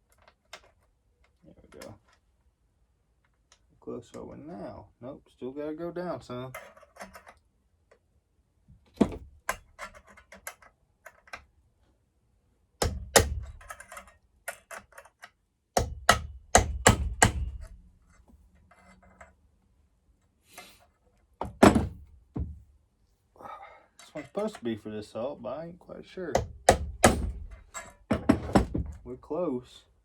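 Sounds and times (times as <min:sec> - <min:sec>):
hammer tapping on metal punch: 0:12.8 - 0:13.8, 0:15.8 - 0:17.8, 0:26.4 - 0:28.2.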